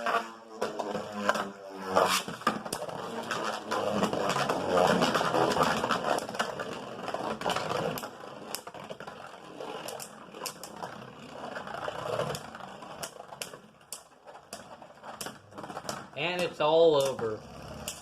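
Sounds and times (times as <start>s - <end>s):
spinning tops grinding: 0.0s - 18.0s
spinning tops clicking as they collide: 9.5s - 18.0s.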